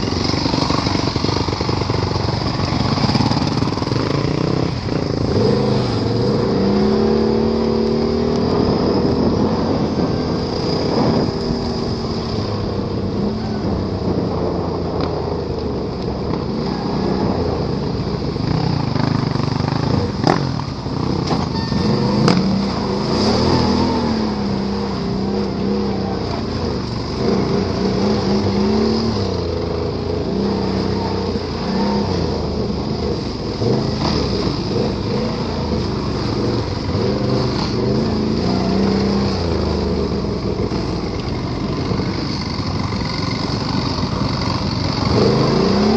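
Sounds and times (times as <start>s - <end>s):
atv engine running under load: 0.0s - 45.9s.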